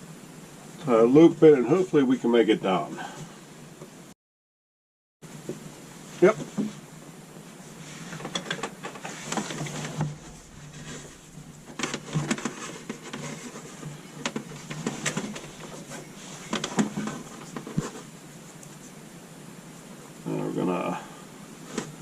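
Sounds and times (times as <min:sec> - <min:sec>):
wire scraping and rustling: 0:07.6 - 0:19.0.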